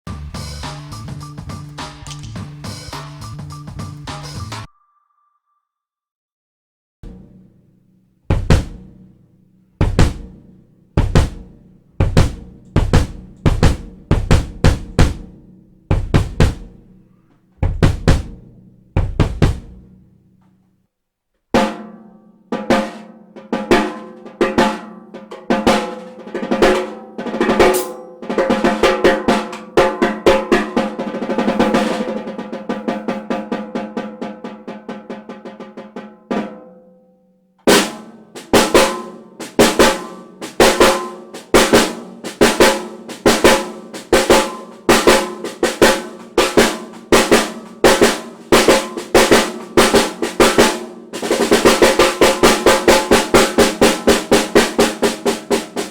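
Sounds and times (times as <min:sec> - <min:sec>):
fast drum rolls: 0:07.0 - 0:07.6, 0:08.2 - 0:09.2, 0:09.8 - 0:17.0, 0:17.6 - 0:20.1, 0:22.6 - 0:35.9, 0:37.7 - 0:55.9
heavy drum hits: 0:07.0 - 0:20.1, 0:37.7 - 0:55.9.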